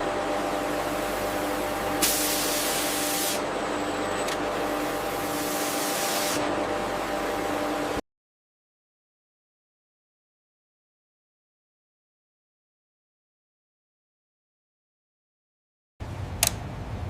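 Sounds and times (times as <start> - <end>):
machinery hum: 0.0 - 8.0
hissing bursts: 0.6 - 3.5, 4.6 - 6.5.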